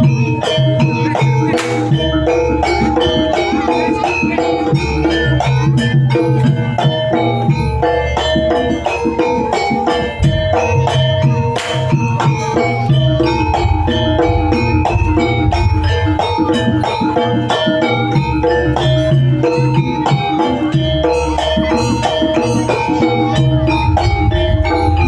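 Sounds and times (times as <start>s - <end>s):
hand drums beating: 0.0s - 25.0s
metallophone melody: 0.0s - 25.0s
deep gong strokes: 13.0s - 16.7s.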